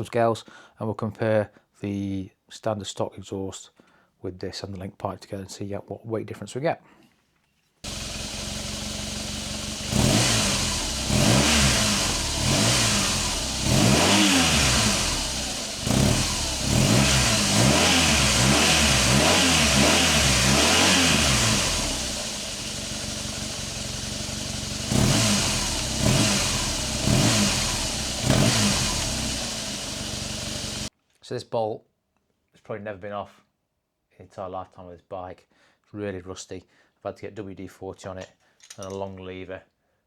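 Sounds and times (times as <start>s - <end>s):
motorcycle engine idling and revving: 7.9s - 30.9s.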